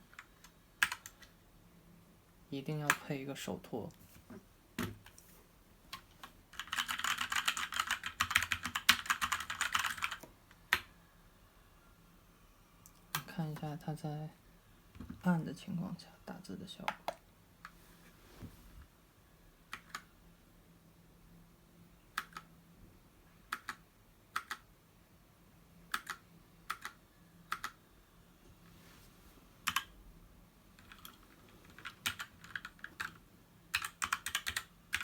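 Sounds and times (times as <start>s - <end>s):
mechanical keyboard typing: 0.1s - 1.3s, 5.9s - 10.9s, 19.7s - 20.1s, 22.2s - 22.5s, 23.5s - 23.8s, 24.4s - 24.6s, 25.9s - 27.8s, 29.6s - 29.9s, 30.8s - 35.0s.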